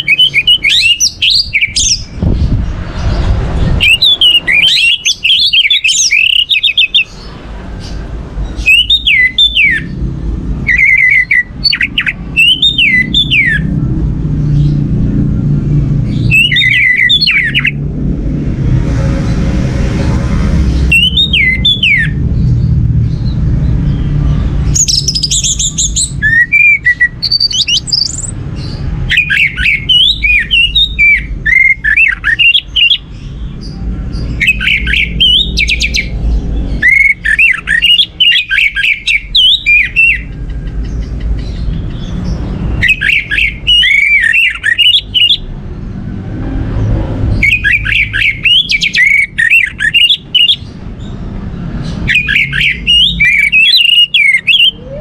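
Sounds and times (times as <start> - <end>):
thrush singing whistled phrases: 0.0 - 2.2, 3.8 - 7.1, 8.6 - 10.0, 10.6 - 13.7, 16.2 - 17.8, 20.9 - 22.2, 24.7 - 28.4, 29.1 - 33.1, 34.4 - 36.1, 36.8 - 40.3, 42.7 - 45.5, 47.4 - 50.7, 52.0 - 55.0
low rumble: 2.0 - 4.6, 17.8 - 26.3.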